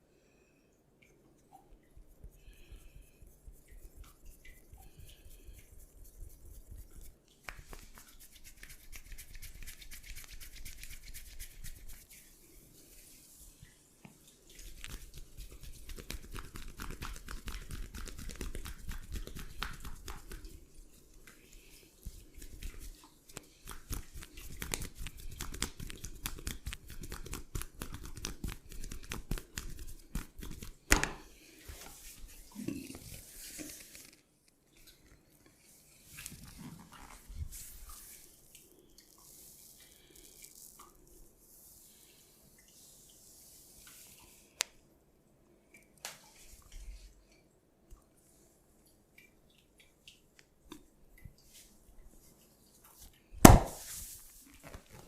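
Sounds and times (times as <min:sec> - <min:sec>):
hands rubbing over skin: 0:02.0 - 0:34.2, 0:35.9 - 0:38.4, 0:53.0 - 0:55.0.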